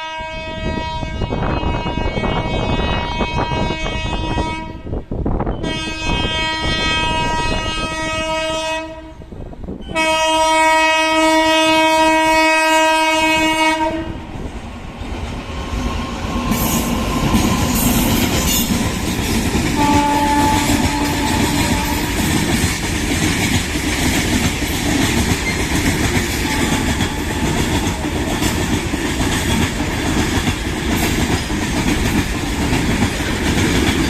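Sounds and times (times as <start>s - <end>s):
locomotive air horn blasts: 0.0s - 5.0s, 5.6s - 9.3s, 9.9s - 14.2s, 19.8s - 22.3s, 26.4s - 28.0s
train wheels clattering on rails: 14.3s - 34.0s.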